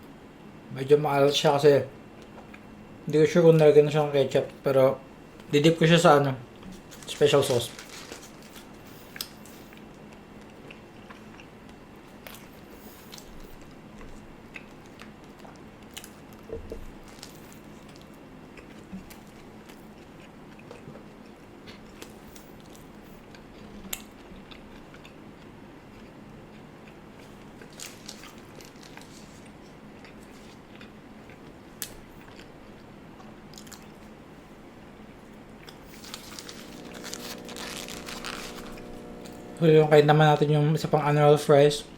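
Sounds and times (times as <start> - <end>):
faint steady hum: 0.0 - 41.9
biting and chewing: 6.6 - 34.2, 35.3 - 39.6.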